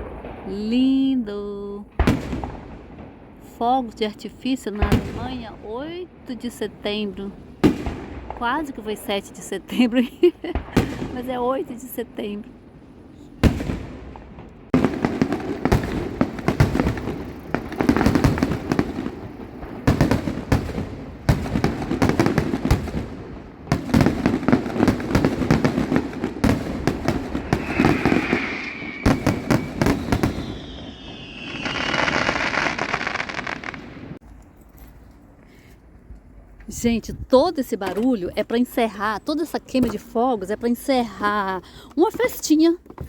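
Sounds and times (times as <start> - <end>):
fireworks bangs and crackles: 0.0 - 34.2
falling firework whistle: 26.4 - 34.2
broad hiss: 27.0 - 33.6.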